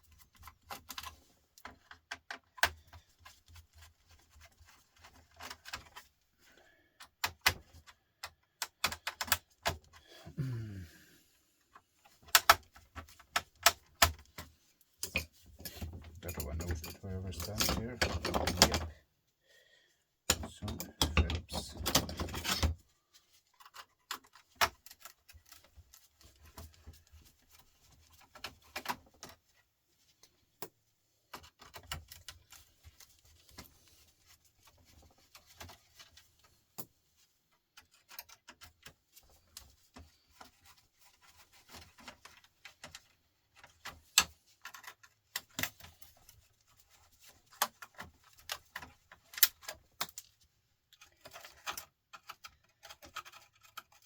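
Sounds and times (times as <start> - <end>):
sharp knocks of parts: 12.2 - 18.9, 20.3 - 22.8.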